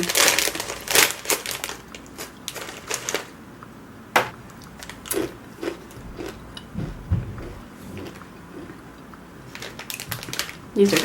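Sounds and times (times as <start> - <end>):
crunchy crackers being chewed: 0.0 - 3.3, 4.5 - 6.4, 8.0 - 11.0
low thud: 6.0 - 7.8.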